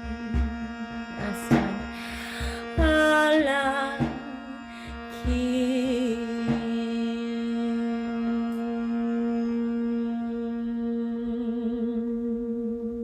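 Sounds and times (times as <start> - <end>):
low thumps: 0.0 - 7.2.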